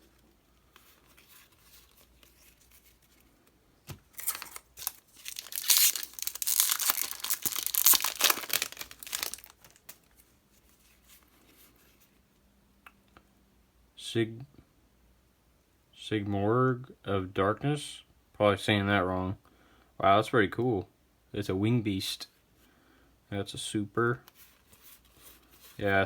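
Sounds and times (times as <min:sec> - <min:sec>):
handling rustle: 0:00.0 - 0:12.2, 0:24.2 - 0:26.0
foil wrapper tearing and crinkling: 0:04.0 - 0:10.2.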